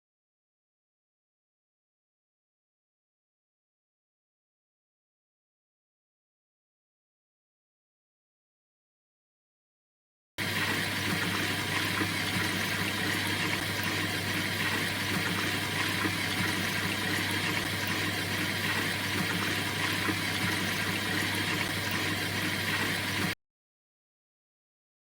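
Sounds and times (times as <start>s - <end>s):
rushing water: 10.4s - 23.4s
washing machine motor hum: 10.4s - 23.4s.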